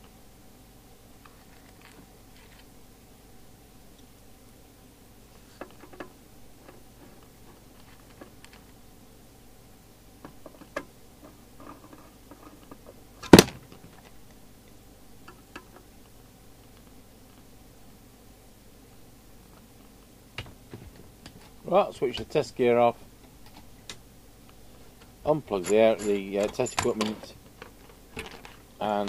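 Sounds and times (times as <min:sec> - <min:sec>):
small clicks and taps: 0:14.0 - 0:17.4.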